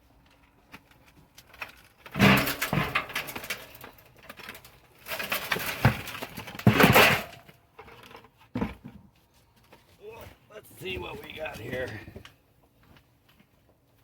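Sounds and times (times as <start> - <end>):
carrot tops rustling: 0.8 - 8.5.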